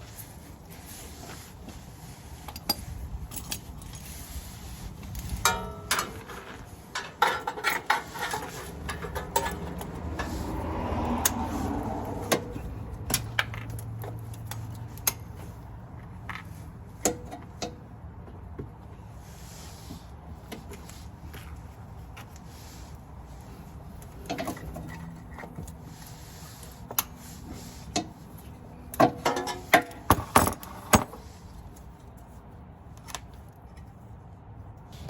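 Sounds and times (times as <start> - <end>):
metal tools clinking and clanking: 2.4 - 4.2, 5.2 - 10.4, 28.9 - 31.2.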